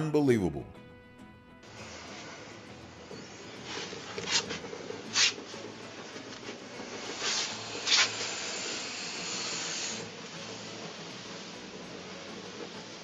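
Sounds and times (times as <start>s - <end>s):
snake hissing: 7.0s - 10.1s.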